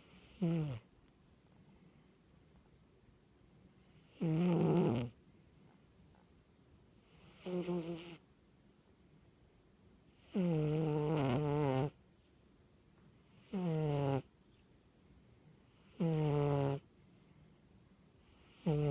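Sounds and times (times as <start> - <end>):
quiet breathing: 0.0 - 2.7, 16.8 - 18.9
person snoring: 18.4 - 18.9.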